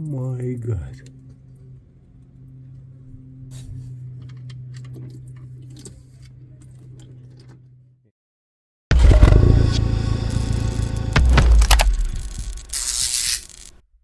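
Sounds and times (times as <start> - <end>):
steady low hum: 8.9 - 13.9
small metal parts clinking: 11.6 - 13.7.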